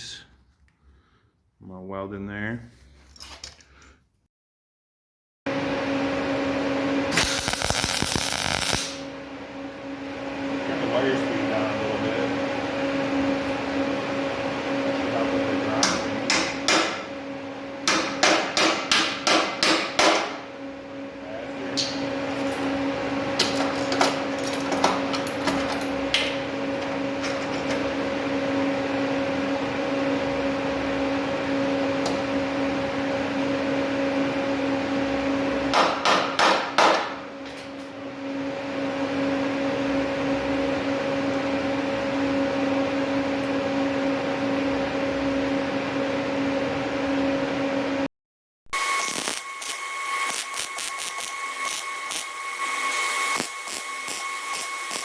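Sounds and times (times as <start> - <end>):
hammer striking metal: 15.8 - 17.0, 17.8 - 20.4, 35.7 - 37.2.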